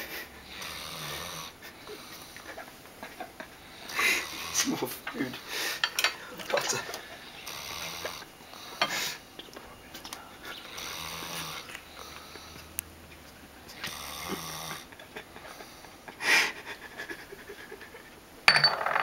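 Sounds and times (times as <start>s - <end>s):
man snoring: 0.4s - 2.3s, 3.8s - 4.9s, 7.3s - 8.8s, 10.7s - 12.6s, 13.8s - 14.9s.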